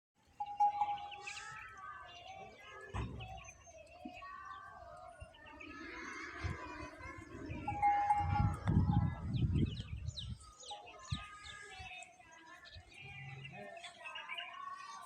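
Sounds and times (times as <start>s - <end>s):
small birds chirping: 0.2s - 15.0s.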